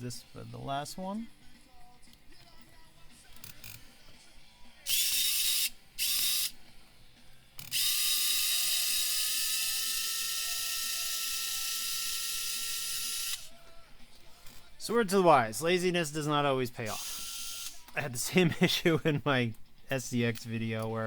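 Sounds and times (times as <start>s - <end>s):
electric screwdriver whining: 4.9s - 6.6s, 7.6s - 13.5s, 16.9s - 18.0s.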